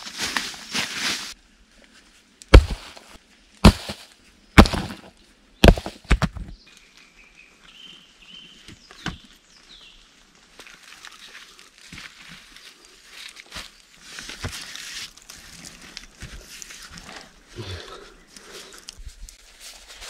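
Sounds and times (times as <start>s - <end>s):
heavy chopping blows on wood: 2.5s - 6.5s
bird singing: 4.5s - 10.0s.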